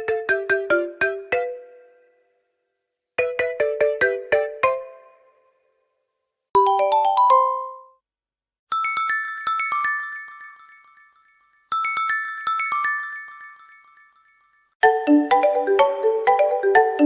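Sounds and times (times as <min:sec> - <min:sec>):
phone ringtone marimba notes: 0:06.6 - 0:08.0, 0:08.7 - 0:17.0.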